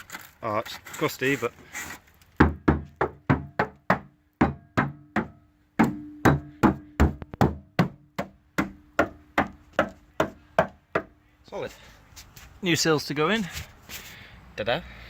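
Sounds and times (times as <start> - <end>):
knocking on car metal: 2.4 - 11.2.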